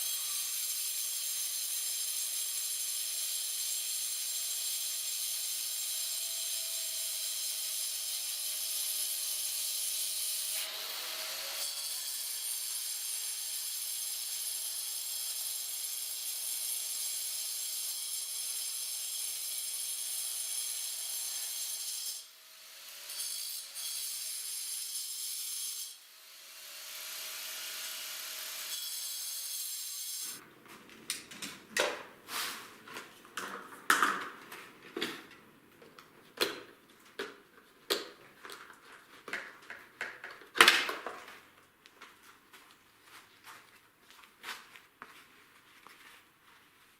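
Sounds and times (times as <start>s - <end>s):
objects knocking and clicking: 32.9s - 41.4s.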